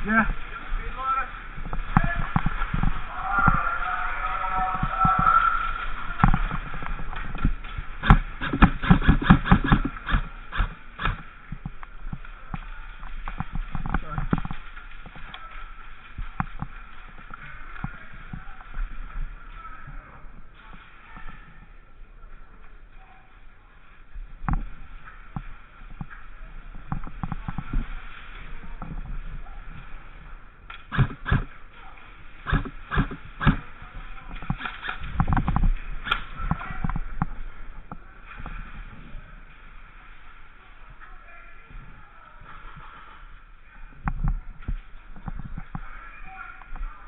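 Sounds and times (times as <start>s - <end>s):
airsoft gunshots and bb hits: 8.0s - 11.2s, 32.5s - 33.6s.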